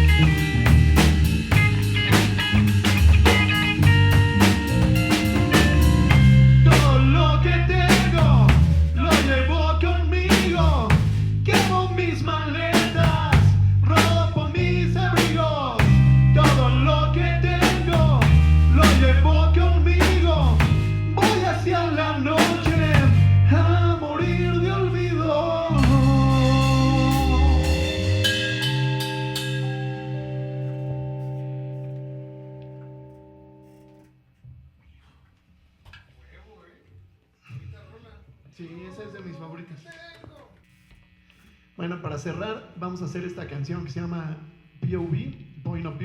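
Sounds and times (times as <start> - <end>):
drum kit beat: 0.0 - 7.2, 7.8 - 9.5, 10.3 - 12.0, 12.7 - 14.3, 15.1 - 16.9, 17.6 - 19.2, 20.0 - 21.6, 22.4 - 23.4, 25.8 - 31.4
lead guitar bending notes: 0.0 - 7.8, 25.7 - 34.0
bass guitar low notes: 0.0 - 34.1.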